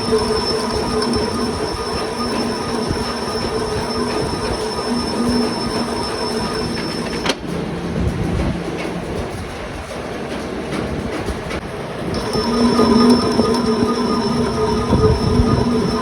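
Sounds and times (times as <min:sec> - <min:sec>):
machine cutting metal squeal: 0:00.0 - 0:07.4, 0:12.1 - 0:16.0
low machine hum: 0:00.0 - 0:09.1, 0:12.0 - 0:16.0.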